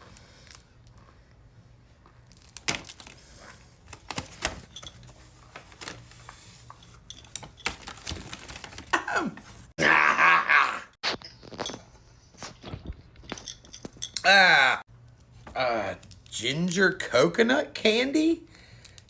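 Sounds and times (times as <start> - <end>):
plastic wrapper crinkling: 2.2 - 6.3, 7.3 - 9.0.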